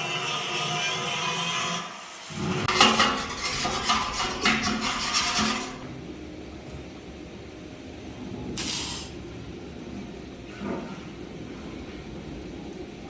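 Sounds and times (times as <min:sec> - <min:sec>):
rasping grinding tool: 0:02.6 - 0:05.9.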